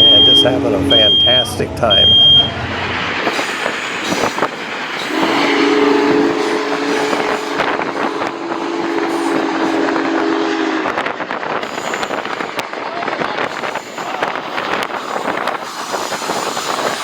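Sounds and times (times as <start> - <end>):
train rumble and clatter: 0.0 - 17.0
steam whistle blowing: 5.0 - 14.3.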